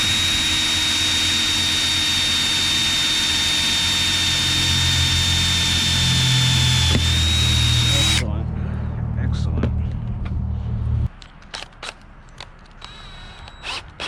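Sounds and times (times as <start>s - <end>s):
electric drill whining: 0.0s - 8.2s, 12.8s - 14.0s.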